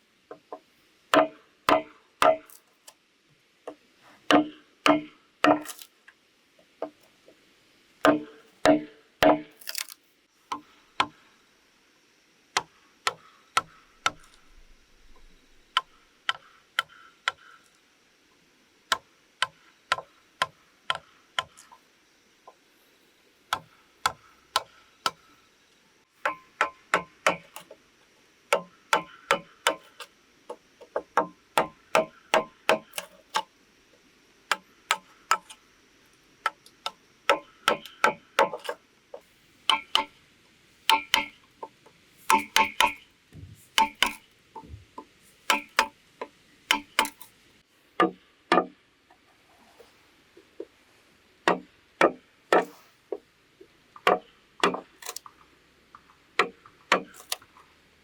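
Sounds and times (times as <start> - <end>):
hand tool striking bamboo: 1.2 - 2.6, 4.3 - 5.9, 8.0 - 11.2, 12.6 - 17.4, 23.5 - 25.2, 26.2 - 27.7, 28.5 - 30.1, 31.0 - 33.5, 34.5 - 35.6, 36.4 - 38.8, 39.7 - 40.2, 40.9 - 41.4, 42.2 - 44.8, 45.4 - 46.0, 46.7 - 47.2, 48.0 - 48.7, 51.5 - 52.8, 54.1 - 55.2, 56.4 - 57.4.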